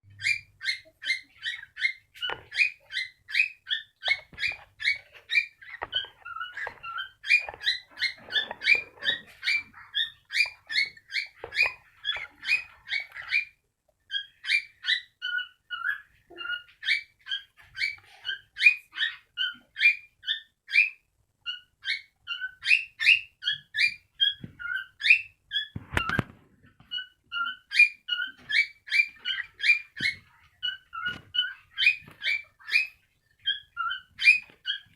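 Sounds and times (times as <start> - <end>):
cockatiel chirping: 0.1 - 34.9.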